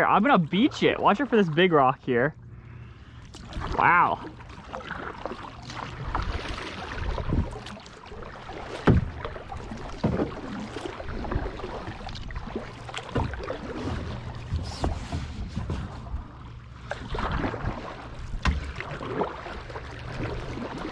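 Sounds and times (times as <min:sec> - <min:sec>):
paddle splashing water: 0:02.6 - 0:20.9
dull knocks: 0:08.8 - 0:09.2.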